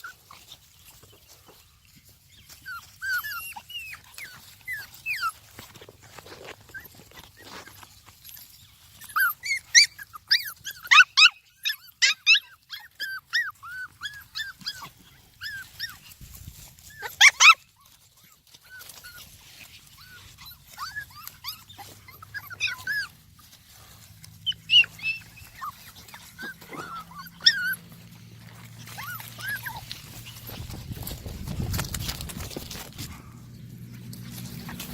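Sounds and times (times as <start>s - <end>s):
puppies whimpering and squeaking: 0.0s - 34.9s.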